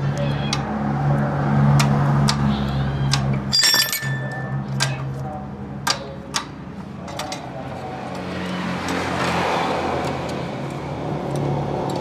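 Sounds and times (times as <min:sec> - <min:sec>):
vehicle passing: 0:07.7 - 0:12.0.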